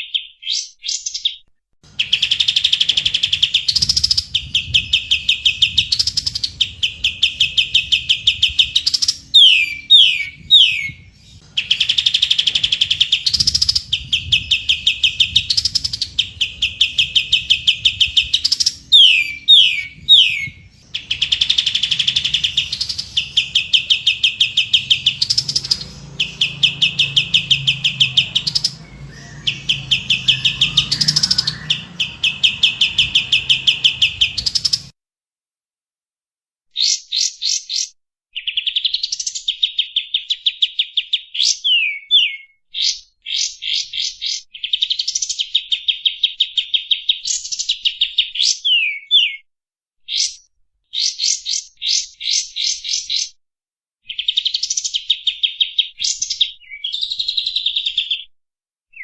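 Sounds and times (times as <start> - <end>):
bird trilling: 2.0 - 34.9.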